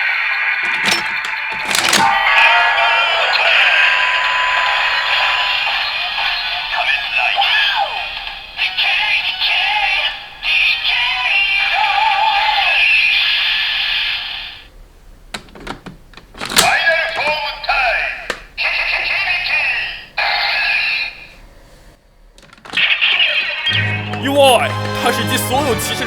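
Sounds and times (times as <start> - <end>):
synthesized voice from tinny speaker: 24.2 - 26.0.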